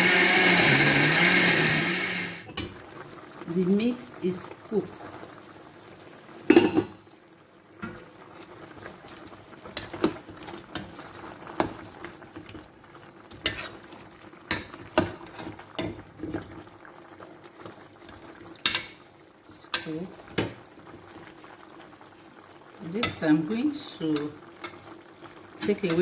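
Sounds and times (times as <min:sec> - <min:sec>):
liquid simmering: 0:00.0 - 0:26.0
metal utensil scraping pot: 0:13.3 - 0:13.9.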